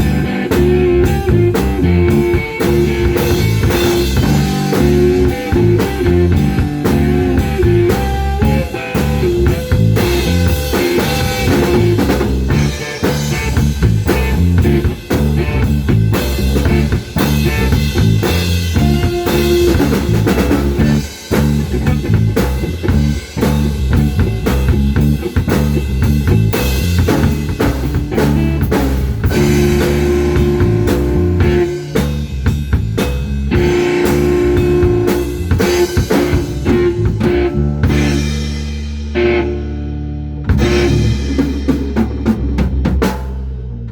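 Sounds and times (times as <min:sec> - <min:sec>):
instrumental rock music: 0:00.0 - 0:43.9.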